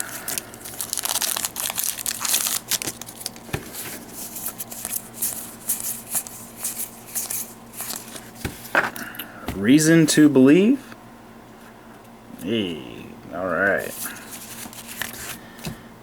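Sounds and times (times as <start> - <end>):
foil wrapper crinkling: 0.0 - 8.4, 14.0 - 15.4
trading cards being handled: 0.0 - 9.0, 13.8 - 15.8.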